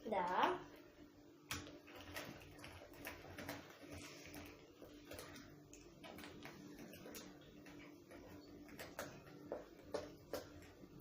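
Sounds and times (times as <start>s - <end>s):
spoon stirring batter in cup: 1.4s - 11.0s.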